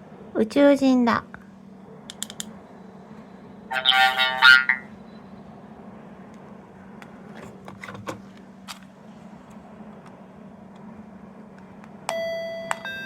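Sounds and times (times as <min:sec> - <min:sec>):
electronic doorbell chime: 0:12.1 - 0:13.0.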